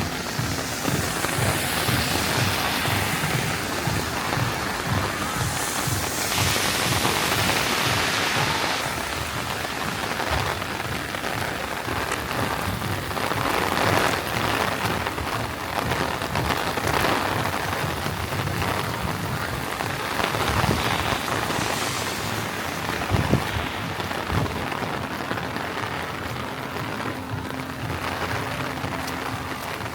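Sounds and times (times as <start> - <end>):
heavy rain splashing: 0.0 - 29.9.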